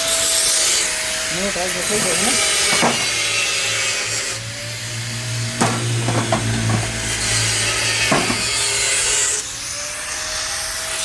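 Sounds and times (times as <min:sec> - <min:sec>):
welding hiss and crackle: 0:00.0 - 0:04.4
sharp metallic knocks: 0:02.0 - 0:03.6, 0:05.4 - 0:09.0.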